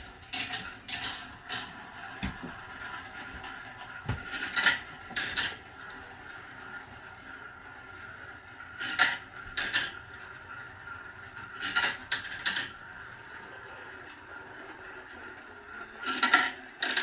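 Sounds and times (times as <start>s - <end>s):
marble clattering on a track: 16.0s - 17.0s.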